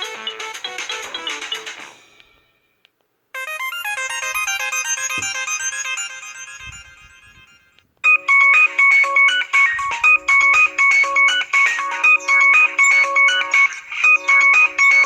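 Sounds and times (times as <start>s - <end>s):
melodic electronic ringtone: 0.0s - 2.0s, 3.4s - 15.0s
fast high-note ringtone: 3.4s - 15.0s.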